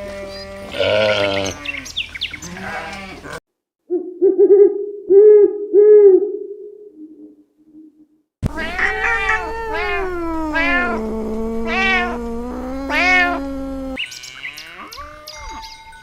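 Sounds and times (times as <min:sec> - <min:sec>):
cat meowing: 0:08.4 - 0:14.0.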